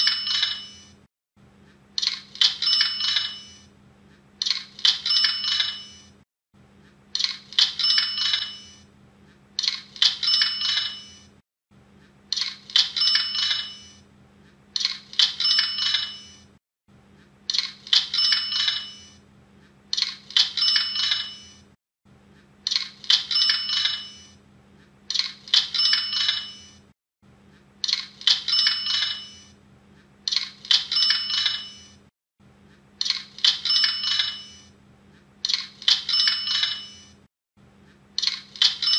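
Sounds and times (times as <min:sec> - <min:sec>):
cash register rattle: 0:07.6 - 0:08.7, 0:10.0 - 0:11.2, 0:12.8 - 0:13.9, 0:15.2 - 0:16.4, 0:23.1 - 0:24.2, 0:25.5 - 0:26.6, 0:28.2 - 0:29.4, 0:30.7 - 0:31.9, 0:33.4 - 0:34.6, 0:35.8 - 0:37.0.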